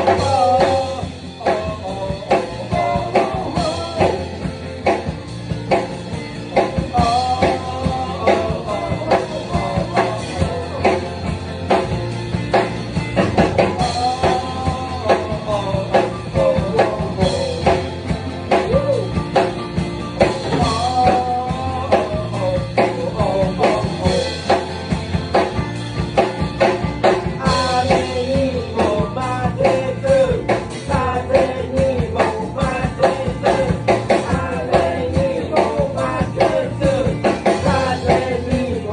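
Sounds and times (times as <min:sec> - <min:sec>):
bending electric guitar lead: 0:00.0 - 0:38.9
rock band playing: 0:00.0 - 0:38.9.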